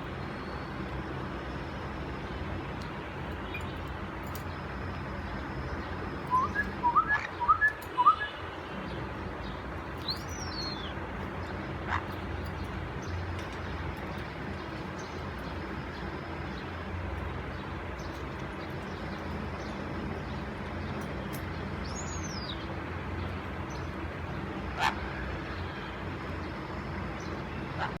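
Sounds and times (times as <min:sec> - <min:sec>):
whistled bird call: 0:06.3 - 0:08.4.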